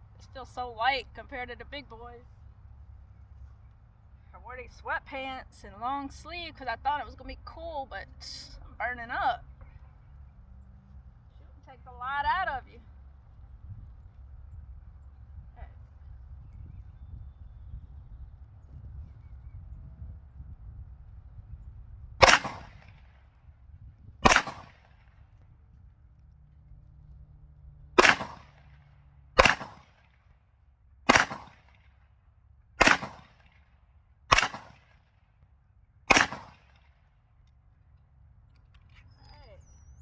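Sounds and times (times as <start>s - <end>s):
pistol shots with echo: 22.2s - 23.1s, 24.2s - 24.9s, 28.0s - 28.7s, 29.4s - 30.1s, 31.1s - 31.8s, 32.8s - 33.6s, 34.3s - 34.9s, 36.1s - 36.8s.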